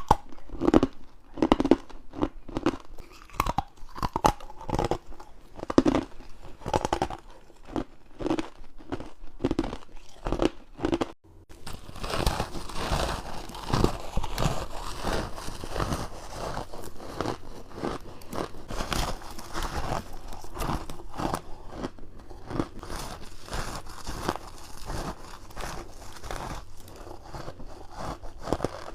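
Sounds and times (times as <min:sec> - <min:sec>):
bites crunching frozen ice: 0:00.0 - 0:28.9.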